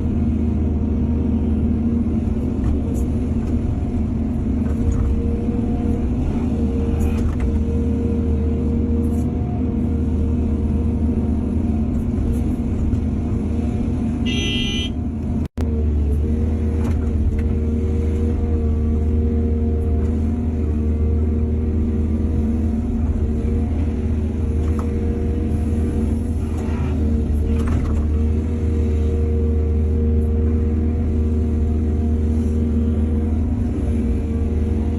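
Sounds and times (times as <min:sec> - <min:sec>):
heavy machinery diesel engines running: 0:00.0 - 0:34.9
short high-pitched horn toot: 0:14.2 - 0:15.0.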